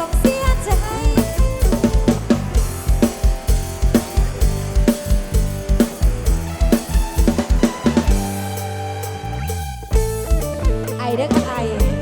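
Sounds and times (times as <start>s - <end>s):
kick drum beat: 0.0s - 8.4s
bass and electric guitar: 0.0s - 12.0s.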